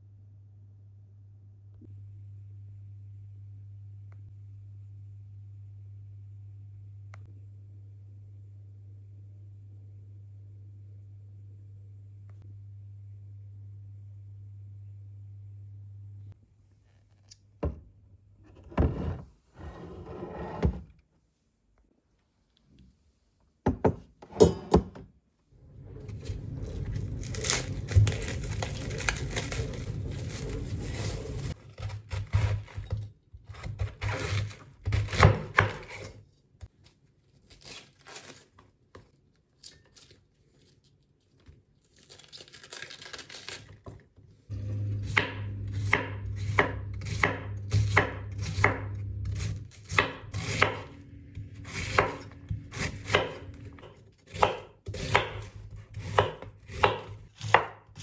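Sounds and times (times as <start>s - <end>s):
low hum: 25.5s - 31.6s, 44.5s - 53.8s
knife chopping on cutting board: 31.7s - 36.1s, 45.0s - 58.0s.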